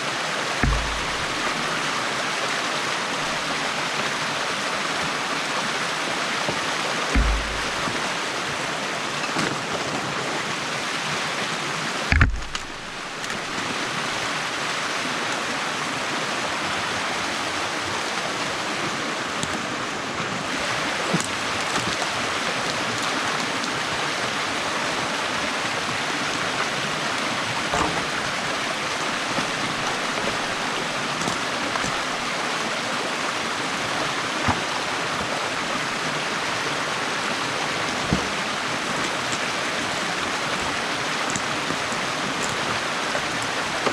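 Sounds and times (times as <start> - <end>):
water rushing through a dam: 0.0 - 43.9
sharp knock: 0.6 - 1.6, 7.2 - 8.0, 12.1 - 13.0.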